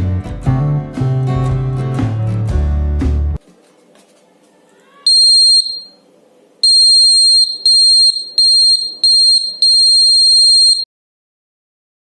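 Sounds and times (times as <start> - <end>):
alarm click: 5.1 - 6.0, 6.6 - 10.9
door alarm buzzer bursts: 5.1 - 6.0, 6.6 - 10.8.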